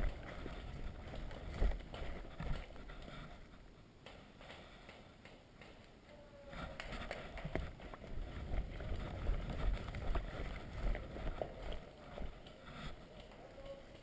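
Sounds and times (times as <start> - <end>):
footsteps on rough ground: 0.0 - 3.4, 6.6 - 13.4
clothing and gear rustling: 0.0 - 4.9, 6.3 - 14.0.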